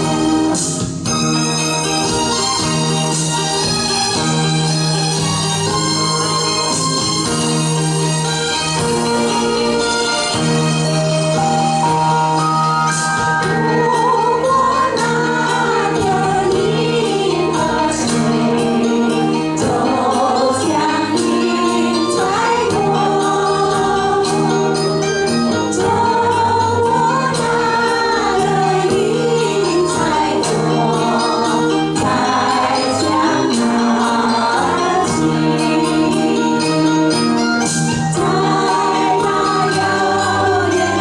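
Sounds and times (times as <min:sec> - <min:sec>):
instrumental accompaniment with beat: 0:00.0 - 0:41.0
choir singing in unison: 0:13.7 - 0:37.3, 0:38.2 - 0:41.0.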